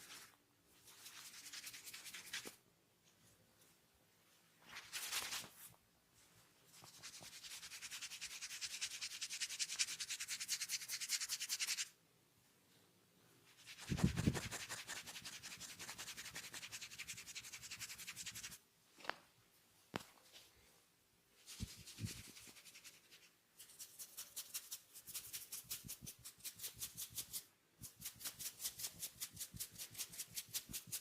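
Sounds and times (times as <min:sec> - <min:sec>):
hands rubbing hair and scalp: 0:00.0 - 0:02.6, 0:04.6 - 0:05.7, 0:06.7 - 0:11.9, 0:13.6 - 0:18.6, 0:21.4 - 0:31.0.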